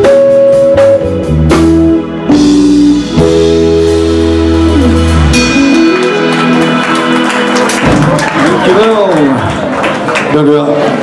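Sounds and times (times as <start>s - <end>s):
live blues band playing: 0.0s - 8.7s.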